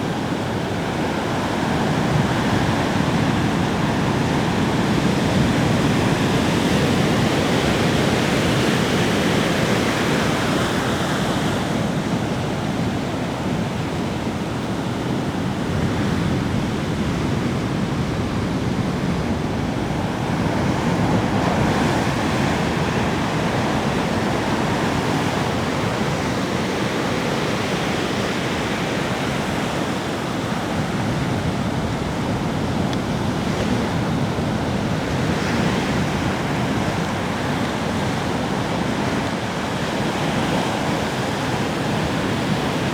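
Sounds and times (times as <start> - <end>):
sea waves breaking on beach: 0.0 - 42.9.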